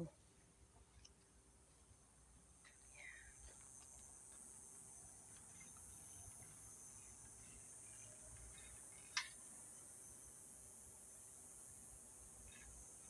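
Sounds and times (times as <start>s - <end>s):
cicadas shrilling: 11.0s - 13.0s.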